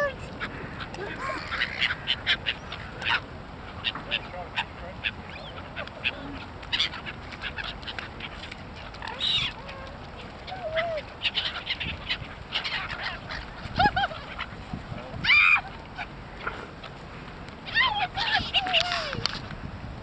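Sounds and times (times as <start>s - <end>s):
geese and ducks honking: 0.4s - 7.8s.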